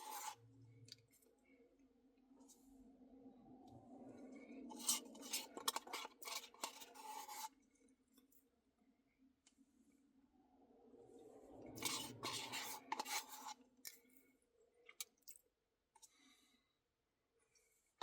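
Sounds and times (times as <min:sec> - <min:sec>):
spoon scraping against cup: 0:00.0 - 0:00.4, 0:04.7 - 0:07.5, 0:11.8 - 0:13.6
low steady hum: 0:00.0 - 0:14.8.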